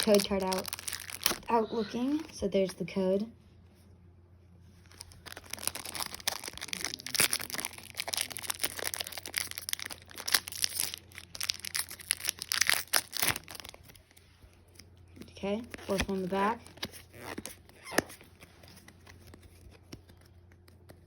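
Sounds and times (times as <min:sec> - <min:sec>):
foil wrapper crinkling: 0:00.0 - 0:01.6, 0:04.8 - 0:14.9
cards being handled: 0:15.7 - 0:21.0.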